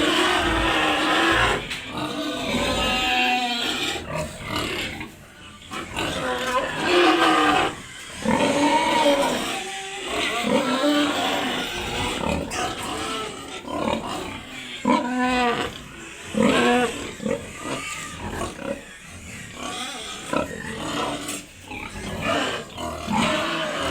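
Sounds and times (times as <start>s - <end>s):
pigs grunting and squealing: 0.0s - 23.9s.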